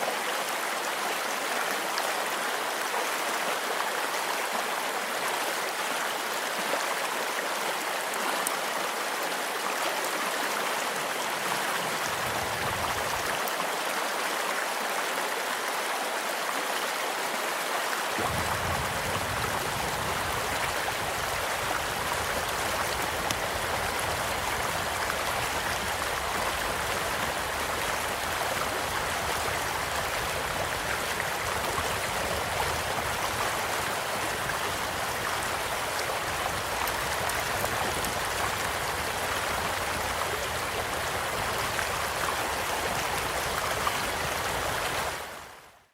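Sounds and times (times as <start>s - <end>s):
stream flowing: 0.0s - 45.9s
faint campfire crackles: 18.2s - 45.4s.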